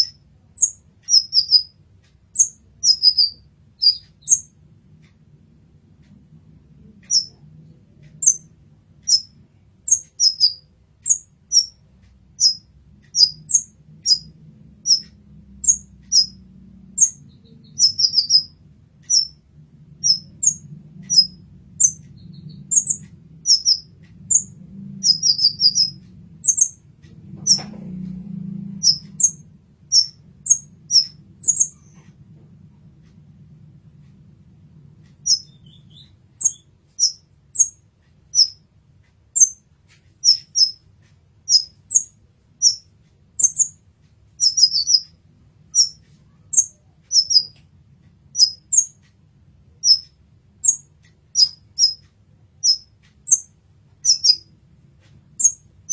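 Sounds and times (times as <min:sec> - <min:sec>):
bird chirping high and sharp: 0:00.0 - 0:01.8, 0:02.4 - 0:04.5, 0:07.0 - 0:07.4, 0:08.2 - 0:11.8, 0:12.4 - 0:19.4, 0:20.0 - 0:26.8, 0:28.8 - 0:32.1, 0:35.1 - 0:38.6, 0:39.4 - 0:39.6, 0:40.2 - 0:40.8, 0:41.5 - 0:43.8, 0:44.4 - 0:47.6, 0:48.3 - 0:49.0, 0:49.7 - 0:52.0, 0:52.6 - 0:54.5, 0:55.4 - 0:55.9
faint low hum: 0:00.0 - 0:55.9.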